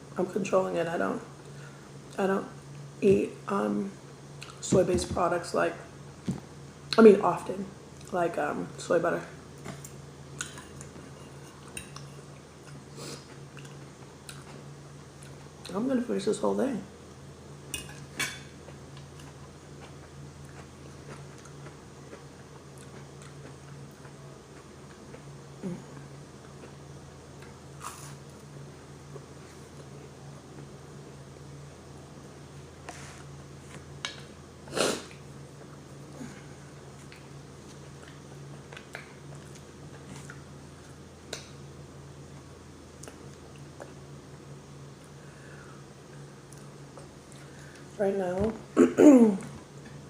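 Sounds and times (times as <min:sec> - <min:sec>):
steady low hum: 0:00.0 - 0:50.0
person chewing food: 0:09.6 - 0:15.5, 0:17.8 - 0:28.4.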